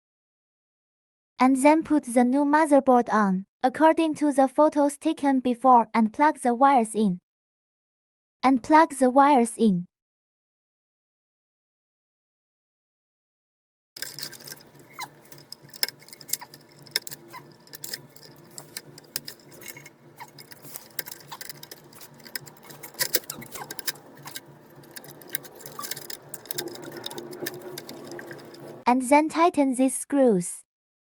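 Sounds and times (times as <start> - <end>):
connectors clicking onto circuit board: 14.0 - 28.8
light scratching: 14.0 - 28.8.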